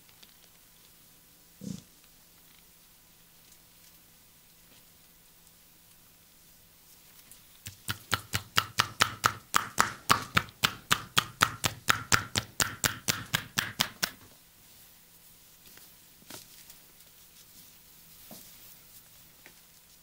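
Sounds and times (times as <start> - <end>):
hands slapping body: 7.6 - 14.2.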